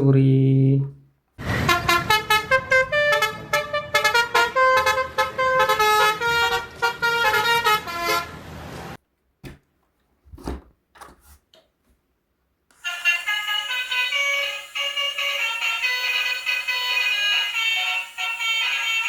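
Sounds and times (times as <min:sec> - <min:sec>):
toy bus horn tune: 0:01.6 - 0:08.4, 0:12.8 - 0:19.0.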